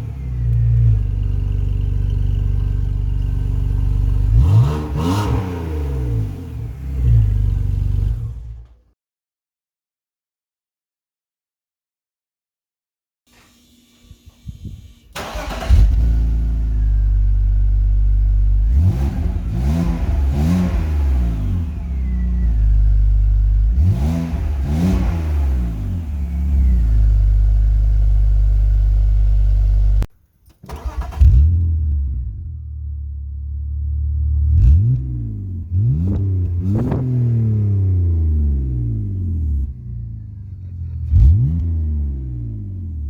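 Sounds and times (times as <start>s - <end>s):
car engine starting and revving: 0.0s - 8.8s, 13.4s - 43.0s.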